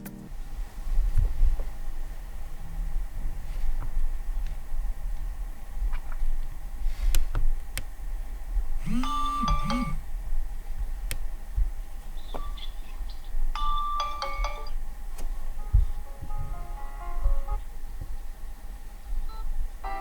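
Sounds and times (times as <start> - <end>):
sharp clicks: 8.8 - 10.0.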